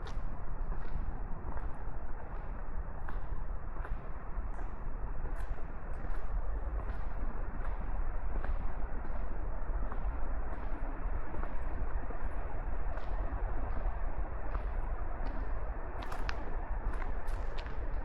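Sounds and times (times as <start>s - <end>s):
footsteps on wet path: 15.4s - 18.0s.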